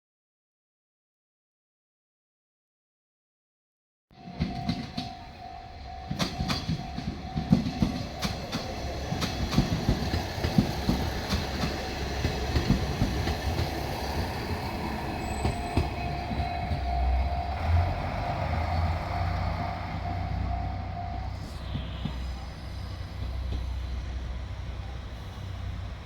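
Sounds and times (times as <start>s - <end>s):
crossing signal warning tone: 4.1s - 24.2s
train engine rumble: 4.2s - 26.0s
train wheels clacking: 4.3s - 24.1s.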